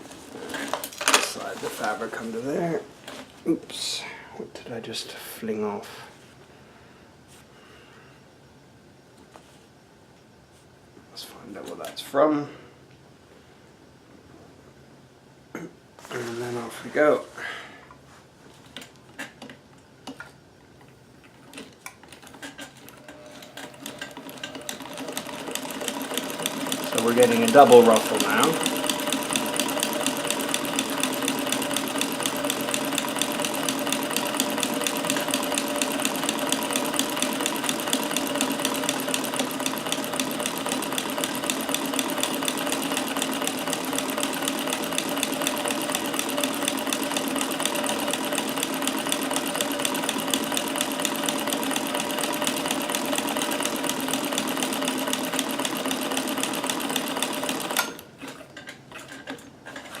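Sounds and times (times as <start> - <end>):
sewing machine clattering: 21.3 - 60.0.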